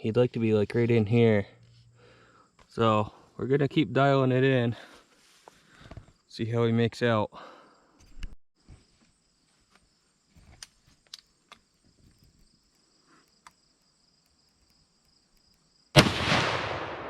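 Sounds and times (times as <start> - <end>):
crickets chirring: 0.0 - 16.0
faint clicks: 10.5 - 15.9
rifle shot: 16.0 - 17.0.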